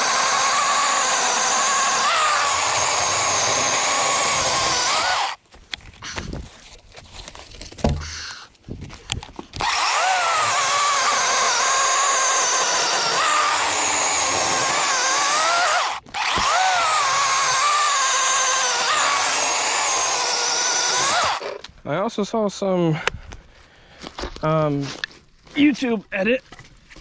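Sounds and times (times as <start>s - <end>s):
electric chainsaw cutting a log: 0.0s - 5.4s, 9.6s - 21.6s.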